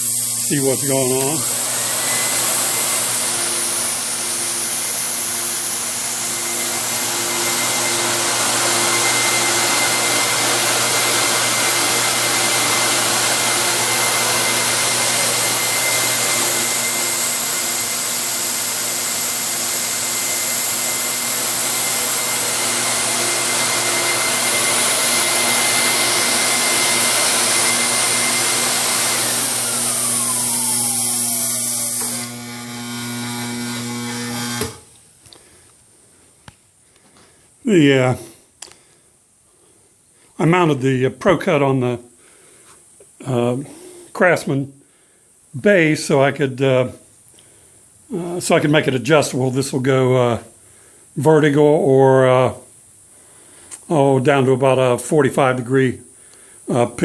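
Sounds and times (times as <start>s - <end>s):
belt grinder humming: 0.0s - 34.9s
vacuum motor whine: 0.0s - 34.9s.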